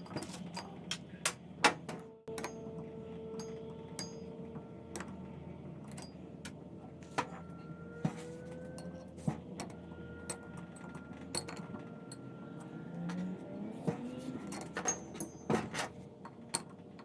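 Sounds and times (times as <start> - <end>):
faint steady hum: 0.0 - 17.0
metallic clinks of tools: 10.3 - 12.7, 14.5 - 17.0.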